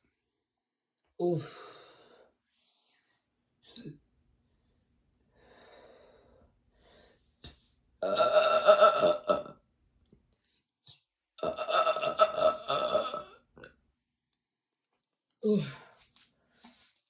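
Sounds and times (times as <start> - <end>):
woman belching: 8.0 - 9.6, 11.4 - 13.4.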